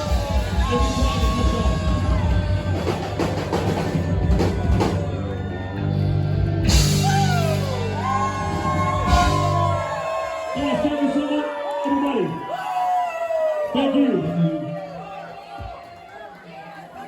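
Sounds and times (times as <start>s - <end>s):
rock band playing: 0.0s - 10.9s.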